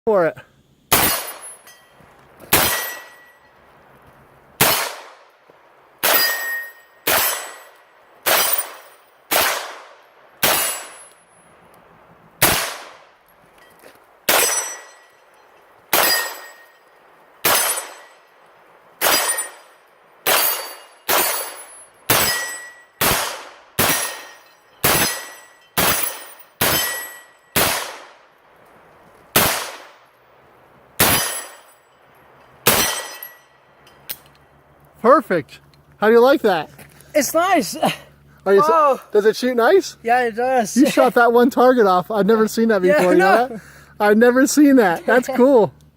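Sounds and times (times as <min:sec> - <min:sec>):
pistol shots: 0:00.9 - 0:01.6, 0:02.5 - 0:03.2, 0:04.6 - 0:05.3, 0:06.0 - 0:10.9, 0:12.4 - 0:13.1, 0:14.3 - 0:14.8, 0:15.9 - 0:16.6, 0:17.4 - 0:18.1, 0:19.0 - 0:19.6, 0:20.2 - 0:28.3, 0:29.3 - 0:30.1, 0:31.0 - 0:31.6, 0:32.6 - 0:33.3
steel target ringing: 0:00.9 - 0:03.6, 0:06.0 - 0:09.1, 0:10.4 - 0:11.5, 0:13.7 - 0:18.4, 0:19.0 - 0:23.2, 0:23.8 - 0:27.8, 0:31.0 - 0:34.1.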